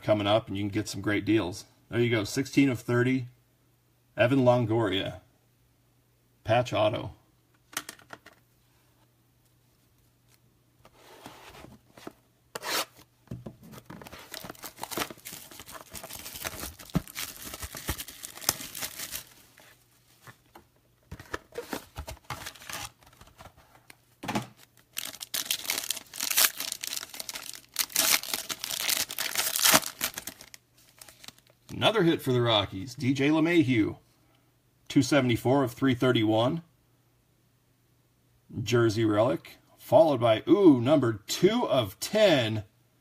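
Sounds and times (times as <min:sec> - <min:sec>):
packaging tearing and crinkling: 0:14.0 - 0:19.7, 0:21.6 - 0:23.5, 0:24.6 - 0:31.6.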